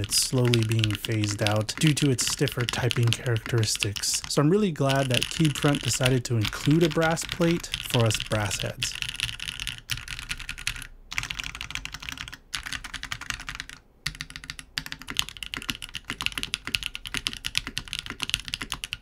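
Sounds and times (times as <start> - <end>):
mechanical keyboard key clacks: 0.0 - 10.1.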